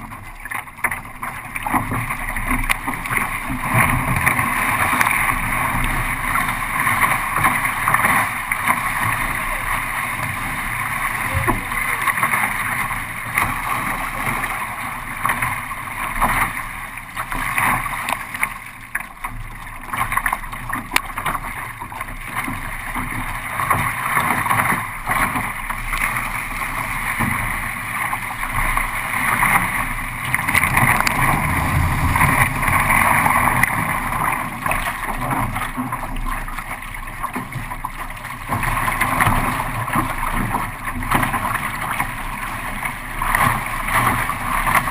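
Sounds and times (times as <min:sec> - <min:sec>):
water rushing around kayak: 0:00.0 - 0:44.9.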